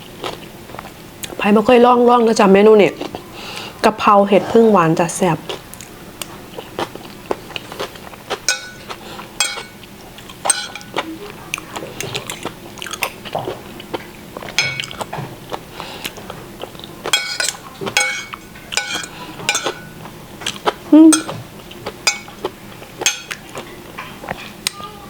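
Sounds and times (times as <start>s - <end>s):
person chewing: 0.1s - 1.4s, 2.9s - 3.8s, 5.4s - 24.5s
cutlery clinking on a plate: 8.4s - 9.8s, 10.4s - 11.0s, 14.5s - 15.3s, 17.0s - 21.4s, 22.0s - 24.6s.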